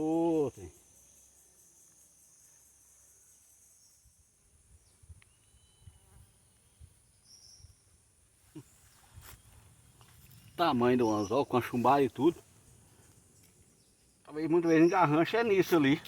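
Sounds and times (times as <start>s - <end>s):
high-pitched insect drone: 0.0s - 6.1s.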